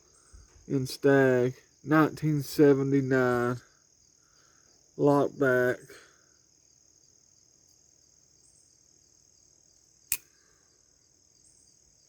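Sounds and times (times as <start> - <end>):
crickets chirring: 0.0 - 12.0
sharp click: 10.1 - 10.4.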